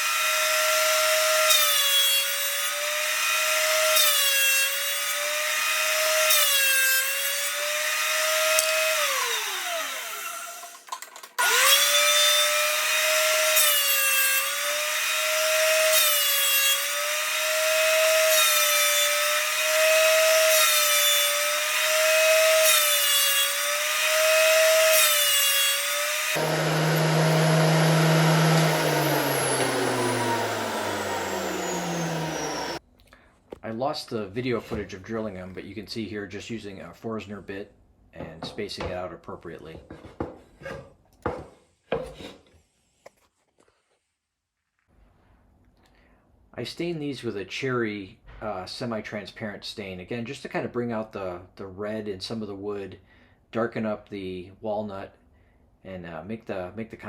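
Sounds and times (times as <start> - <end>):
thickness planer motor whine: 25.8 - 32.8.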